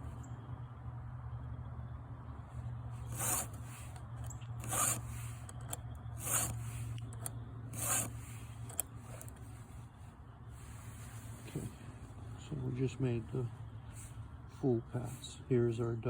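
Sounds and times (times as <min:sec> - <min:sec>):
file rasping on chain tooth: 0:03.0 - 0:04.0, 0:04.6 - 0:09.3.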